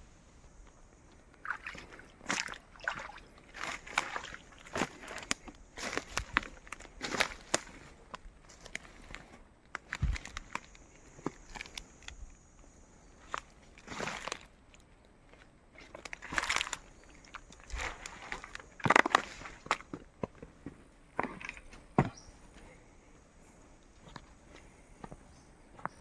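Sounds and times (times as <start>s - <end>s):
rustling and crackling leaves: 0.0s - 14.8s, 15.4s - 20.6s
loud crunches: 3.5s - 12.2s, 15.8s - 20.5s.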